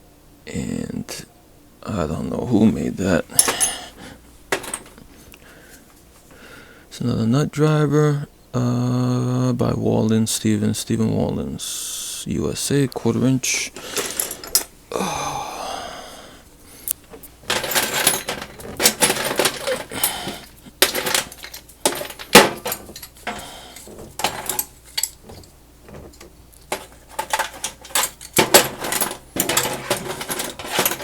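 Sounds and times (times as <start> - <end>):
metal clank ringing: 3.3 - 5.0, 17.5 - 31.0
steel hand tools clinking: 3.3 - 5.0, 13.8 - 14.8, 17.4 - 31.0.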